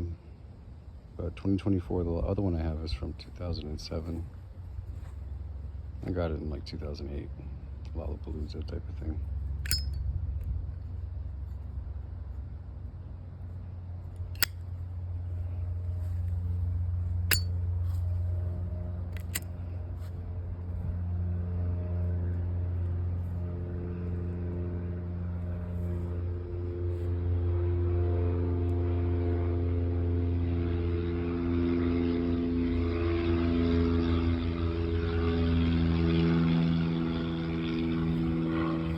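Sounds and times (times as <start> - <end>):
droning engine: 0.0 - 38.9
lighter metallic clicks: 9.6 - 10.0, 14.4 - 14.6, 19.2 - 19.5.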